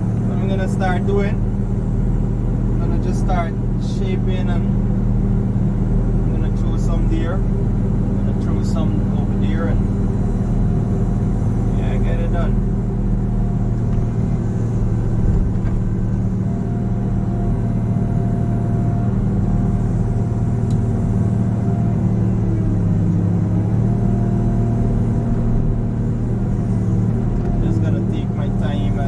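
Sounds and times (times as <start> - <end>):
excavator diesel engine: 0.0 - 29.0
hydraulic whine: 6.2 - 29.0.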